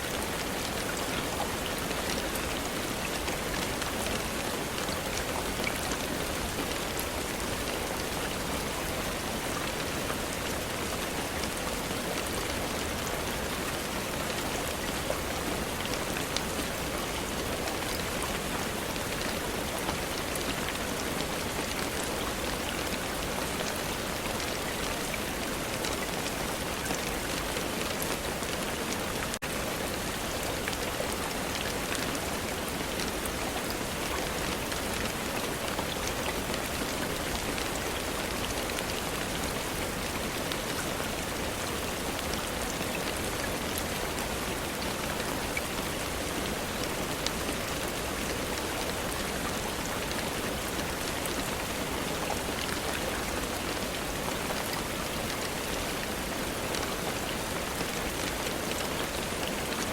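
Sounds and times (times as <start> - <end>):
steady rain falling: 0.0 - 59.9.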